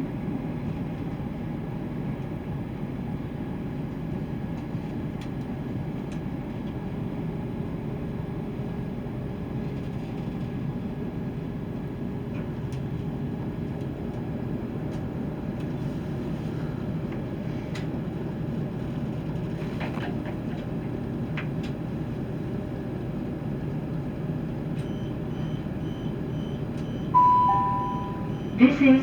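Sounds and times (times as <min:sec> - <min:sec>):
train diesel engine rumble: 0:11.0 - 0:29.0.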